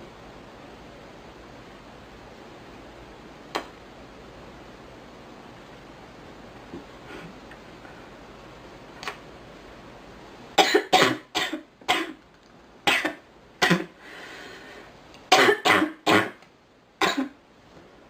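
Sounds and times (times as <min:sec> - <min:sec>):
girl coughing: 0:10.6 - 0:12.2, 0:12.9 - 0:13.9, 0:15.3 - 0:16.4, 0:17.0 - 0:17.4.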